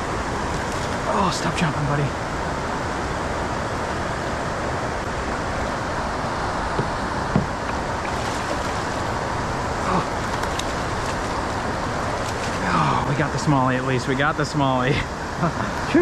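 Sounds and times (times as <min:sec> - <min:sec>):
steady rushing outdoor noise: 0:00.0 - 0:16.0.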